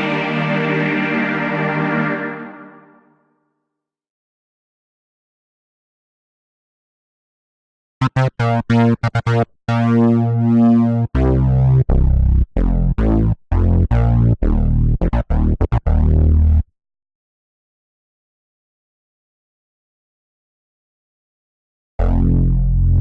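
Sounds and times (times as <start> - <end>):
synthesizer and electric piano chords: 0.0 - 3.2, 8.0 - 16.6, 22.0 - 23.0.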